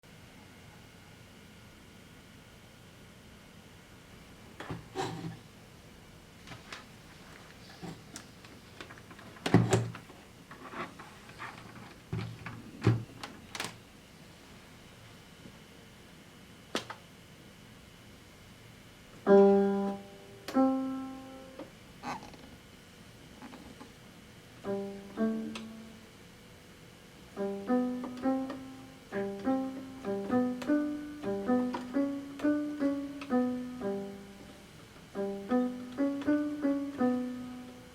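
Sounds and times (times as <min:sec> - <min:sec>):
electronic keyboard piano tune: 0:19.3 - 0:21.7, 0:24.6 - 0:26.0, 0:27.3 - 0:37.9.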